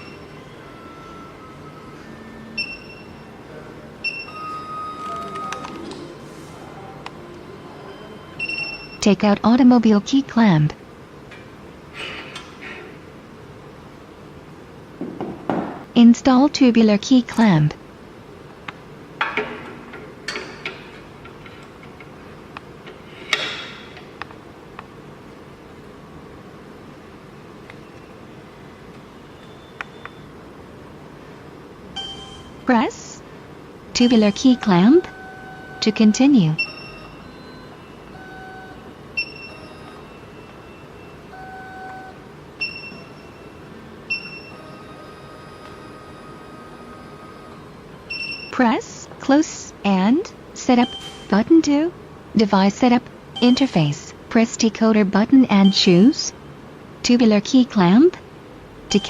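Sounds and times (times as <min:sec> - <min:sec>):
short electronic beeps: 0:34.0 - 0:45.0, 0:50.6 - 0:51.6, 0:53.4 - 0:54.1.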